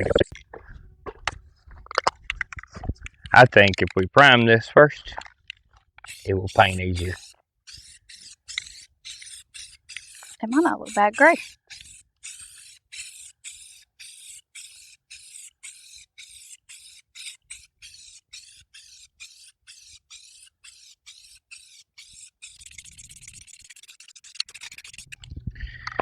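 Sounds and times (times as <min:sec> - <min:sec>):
aerosol spray can hissing: 0:06.1 - 0:18.2.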